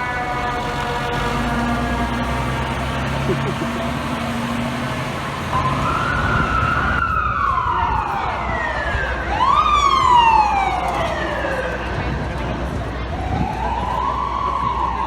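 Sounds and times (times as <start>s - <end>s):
low engine rumble: 0.0s - 9.8s
fire truck siren wailing: 0.0s - 15.0s
street noise: 0.0s - 15.0s.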